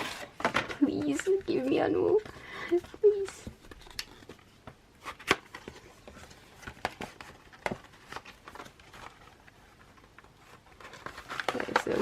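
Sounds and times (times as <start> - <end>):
pages rustling: 0.0 - 12.0.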